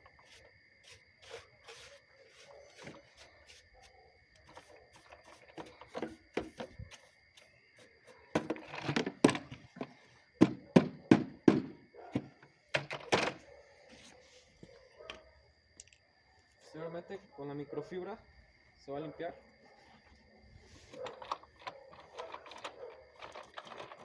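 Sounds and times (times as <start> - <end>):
hollow thunks of vacuum drum: 10.4 - 13.3.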